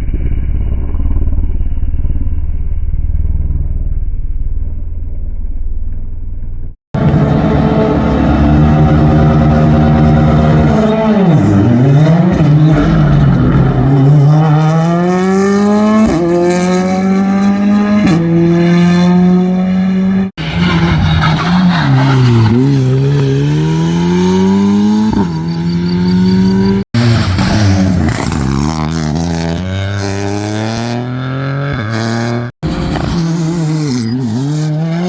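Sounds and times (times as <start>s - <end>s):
rally car engines accelerating: 7.0s - 35.0s.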